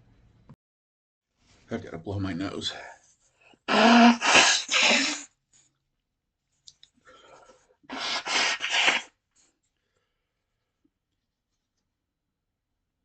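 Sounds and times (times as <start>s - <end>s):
man blowing his nose: 3.7s - 5.3s, 7.9s - 9.3s.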